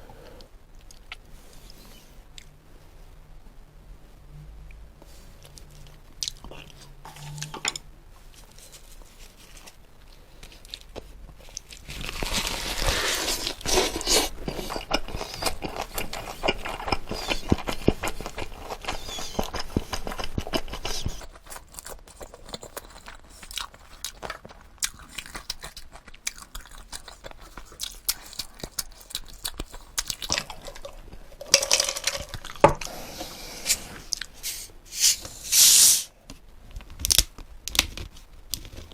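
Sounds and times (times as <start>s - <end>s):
chewing and crunching food: 5.4s - 7.6s, 8.3s - 33.0s.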